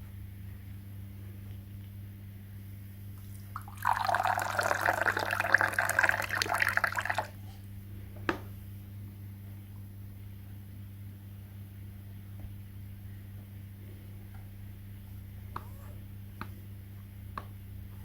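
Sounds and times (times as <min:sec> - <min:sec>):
faint steady hum: 0:00.0 - 0:18.0
liquid pouring and splashing: 0:03.5 - 0:07.4.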